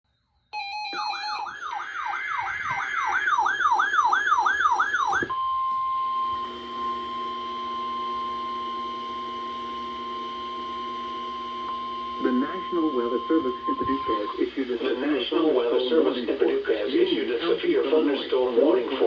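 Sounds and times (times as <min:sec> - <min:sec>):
warbling electronic alert tone: 0:00.6 - 0:05.3
steady attention tone: 0:05.2 - 0:18.8.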